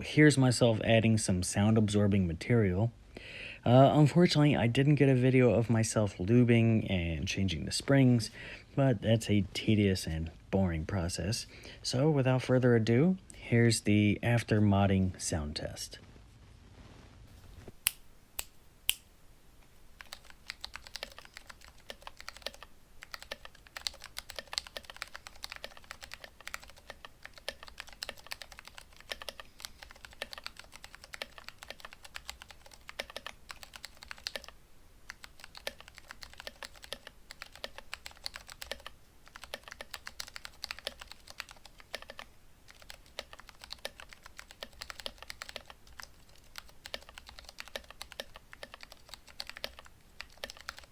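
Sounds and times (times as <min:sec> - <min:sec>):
mechanical keyboard typing: 0:20.0 - 0:50.9.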